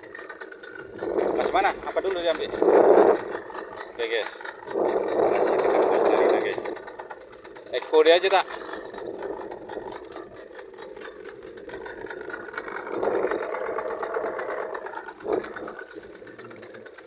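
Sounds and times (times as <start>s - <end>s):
boat engine running: 0.0s - 17.0s.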